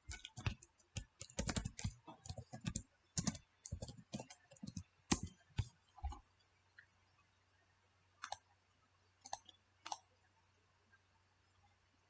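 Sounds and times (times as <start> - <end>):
typing on computer keyboard: 0.0 - 6.2, 8.2 - 8.4, 9.2 - 10.0.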